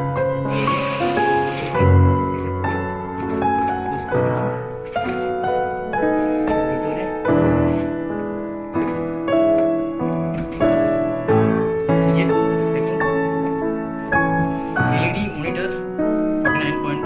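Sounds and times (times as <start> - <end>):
slow piano music: 0.0 - 17.0.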